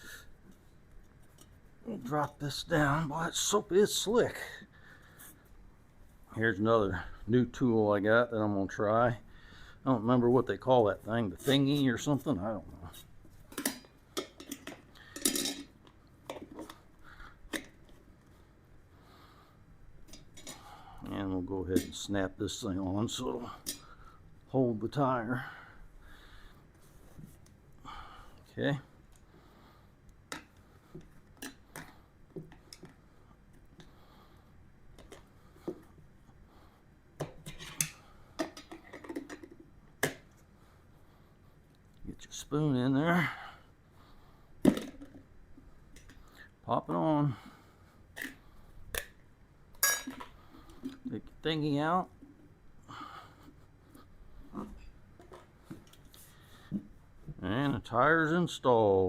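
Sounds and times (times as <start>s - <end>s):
metal tools clinking: 14.4s - 15.7s, 49.8s - 50.2s.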